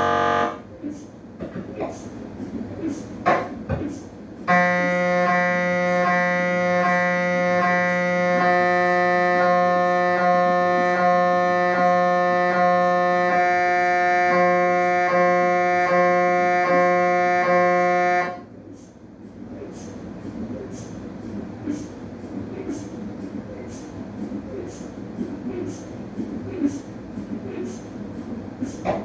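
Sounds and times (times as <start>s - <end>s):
mri scanner buzzing: 0.0s - 0.7s, 4.4s - 18.4s.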